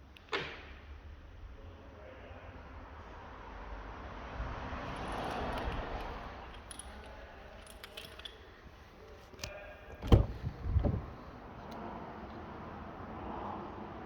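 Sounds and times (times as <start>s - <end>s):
car keys jingling: 4.9s - 11.3s
heavy thud: 10.0s - 11.2s.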